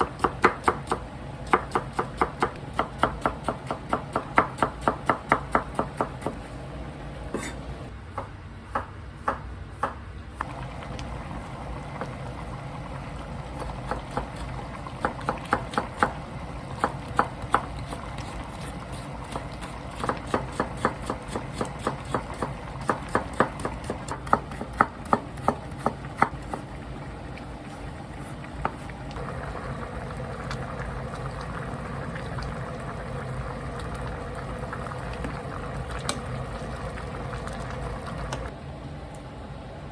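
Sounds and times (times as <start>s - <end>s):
knife chopping on cutting board: 7.3s - 10.0s, 20.0s - 26.6s.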